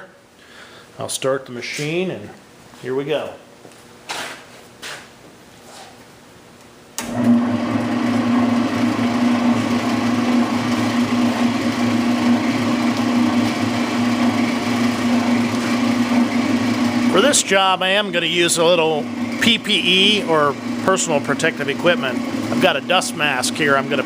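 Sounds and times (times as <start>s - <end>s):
spindle sander motor hum: 7.0s - 24.0s.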